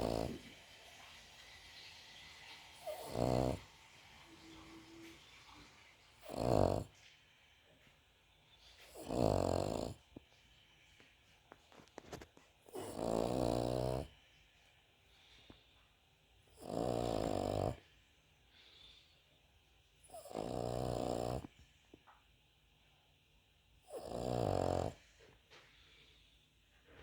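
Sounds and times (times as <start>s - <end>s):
dog snoring loudly: 0.0s - 0.8s, 2.2s - 5.2s, 6.0s - 7.0s, 8.8s - 10.2s, 12.0s - 14.2s, 16.5s - 17.8s, 20.1s - 21.6s, 23.9s - 25.1s
dog breathing quietly: 0.0s - 19.5s.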